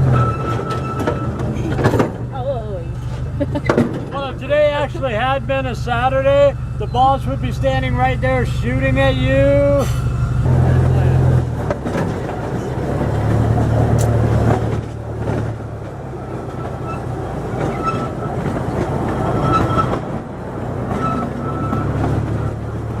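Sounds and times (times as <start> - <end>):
low engine hum: 0.0 - 23.0
train cars rolling rumble: 0.0 - 23.0
wheels squealing: 0.0 - 23.0
sharp click: 14.0 - 14.2.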